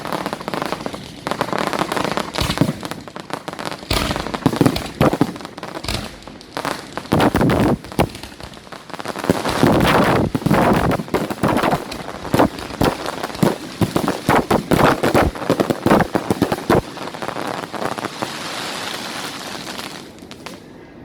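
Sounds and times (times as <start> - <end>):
fireworks bangs and crackles: 0.0 - 20.8
crackling hiss: 0.0 - 21.0.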